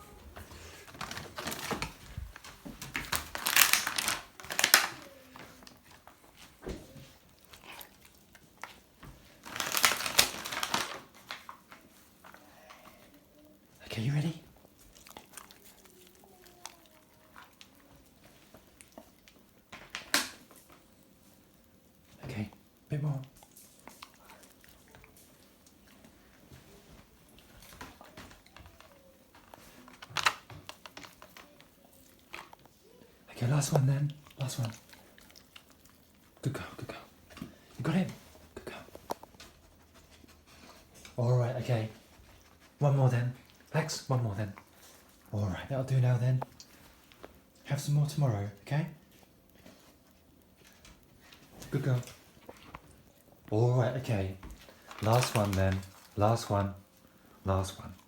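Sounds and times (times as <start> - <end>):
dog chewing: 0.0 - 13.0, 14.5 - 19.7, 23.2 - 41.1, 49.0 - 53.6
plastic packet crinkling: 0.3 - 6.4, 7.4 - 11.7, 27.6 - 32.7, 51.8 - 57.2.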